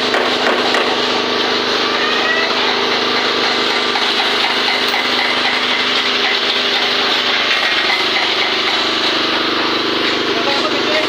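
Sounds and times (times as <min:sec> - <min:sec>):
excavator diesel engine running: 0:00.0 - 0:11.0.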